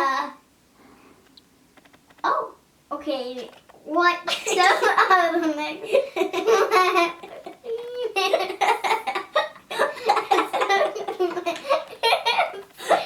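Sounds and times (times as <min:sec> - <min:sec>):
child speech: 0:00.0 - 0:00.4, 0:02.2 - 0:05.9, 0:06.7 - 0:08.4
children laughing: 0:04.3 - 0:13.0.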